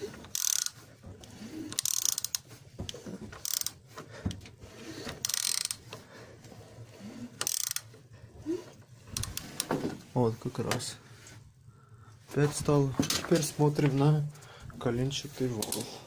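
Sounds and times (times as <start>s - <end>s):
ratchet wrench clicking: 0.3s - 0.8s, 1.7s - 2.4s, 3.4s - 3.8s, 5.2s - 5.8s, 7.4s - 7.9s.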